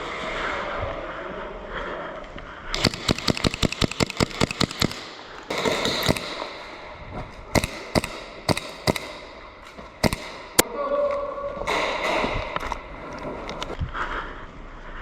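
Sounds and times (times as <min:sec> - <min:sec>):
airsoft gun shots: 0:02.8 - 0:10.6.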